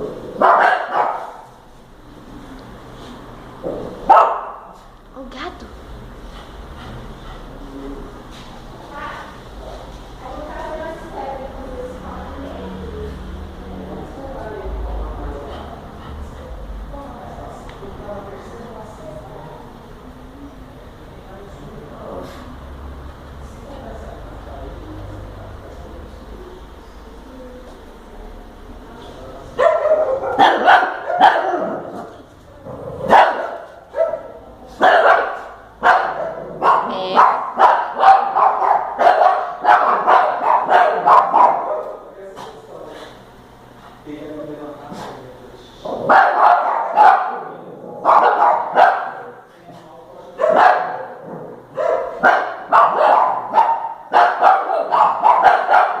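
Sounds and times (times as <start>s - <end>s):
dog barking: 0.4s - 1.5s, 4.1s - 4.8s, 29.6s - 32.1s, 33.0s - 42.0s, 46.0s - 49.4s, 50.4s - 56.0s.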